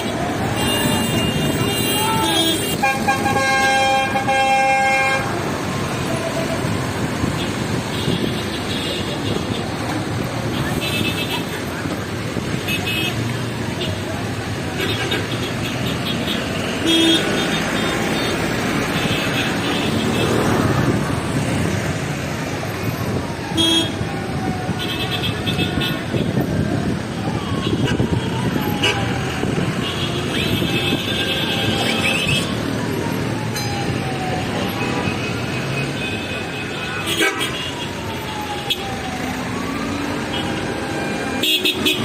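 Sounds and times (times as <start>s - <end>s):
traffic passing: 0.0s - 42.0s
car horn honking: 0.5s - 5.3s, 14.8s - 20.3s, 23.6s - 24.0s, 34.8s - 37.8s, 41.4s - 42.0s.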